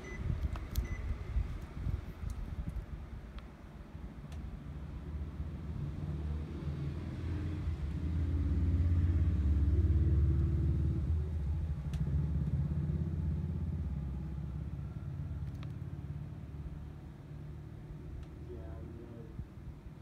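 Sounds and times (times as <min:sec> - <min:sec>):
motor vehicle engine rumble: 0:00.0 - 0:20.0.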